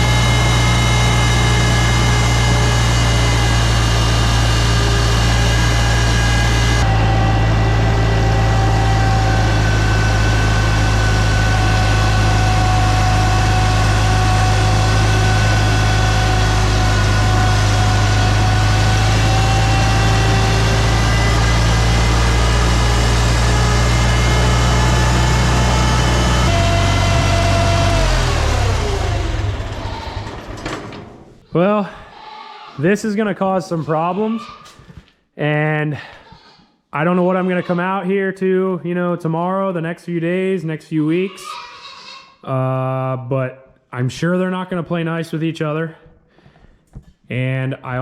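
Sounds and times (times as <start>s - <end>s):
tractor engine running: 0.0s - 31.5s.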